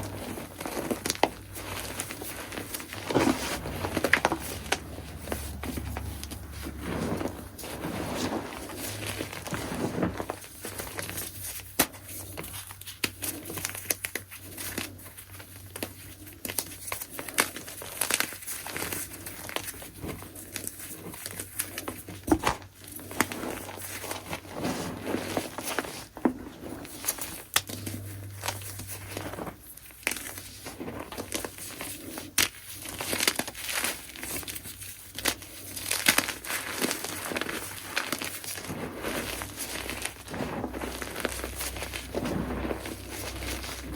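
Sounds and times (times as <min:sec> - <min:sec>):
chalk being crushed: 0:23.2 - 0:43.9.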